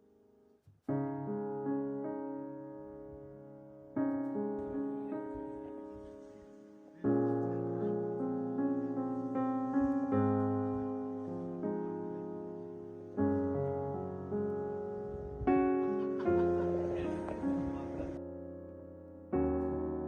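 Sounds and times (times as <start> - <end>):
slow piano chords: 0.0 - 20.0.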